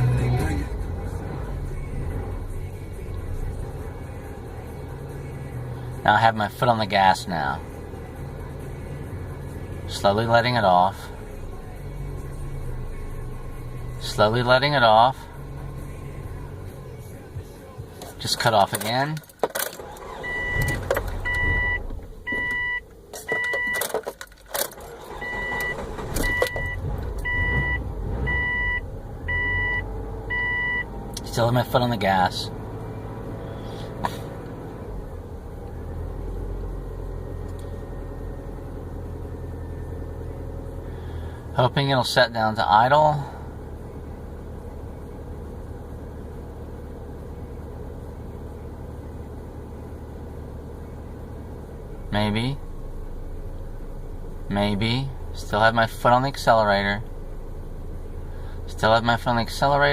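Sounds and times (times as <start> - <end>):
car warning chime beeping: 19.8 - 24.0, 25.0 - 30.9
car engine running roughly: 40.2 - 59.9.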